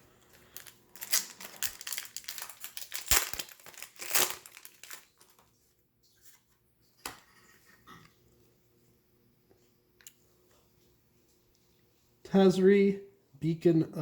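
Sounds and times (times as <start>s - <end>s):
foil wrapper crinkling: 0.1s - 6.4s.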